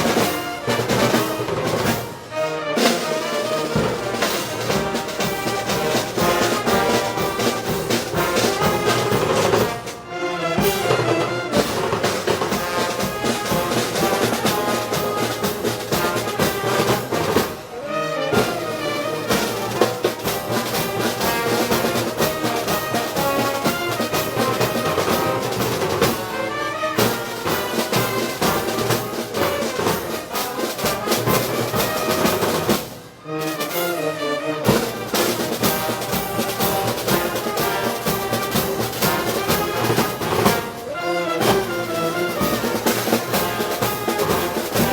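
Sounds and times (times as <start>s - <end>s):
brass band playing: 0.0s - 44.9s.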